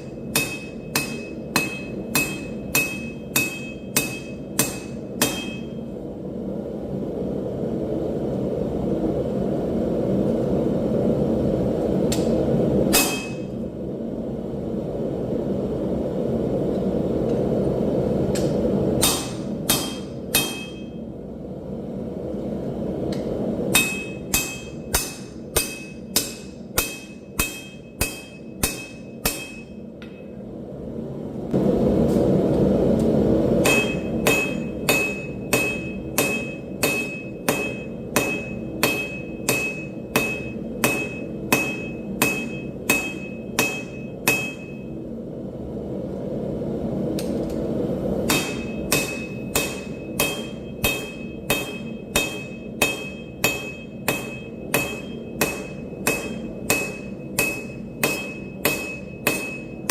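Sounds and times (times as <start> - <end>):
hammer ringing on anvil: 0.0 - 5.8, 12.9 - 13.6, 19.0 - 21.0, 23.7 - 30.4, 33.6 - 44.9, 48.3 - 59.9.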